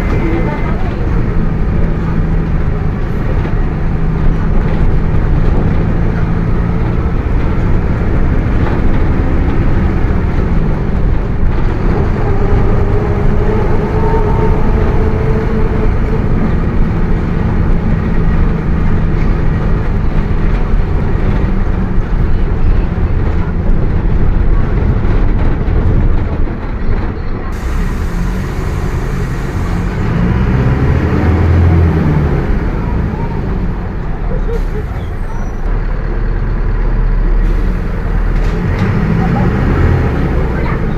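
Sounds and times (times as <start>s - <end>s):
bus diesel engine running: 0.0s - 40.9s
road rumble: 0.0s - 40.9s
differential growling: 11.3s - 18.2s
whining tone: 11.5s - 18.3s.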